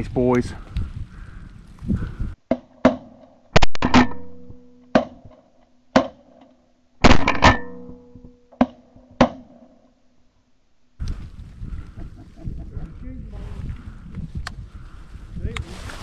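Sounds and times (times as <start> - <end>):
wind on microphone: 0.0 - 2.4, 11.0 - 16.0.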